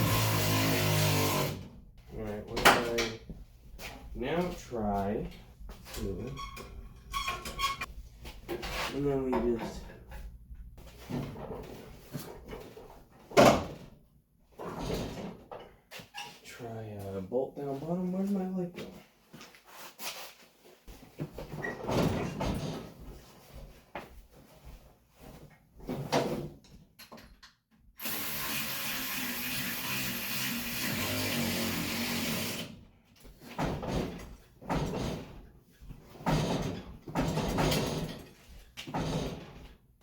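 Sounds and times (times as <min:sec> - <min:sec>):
handheld power tool running: 0:00.0 - 0:01.6, 0:28.0 - 0:32.7.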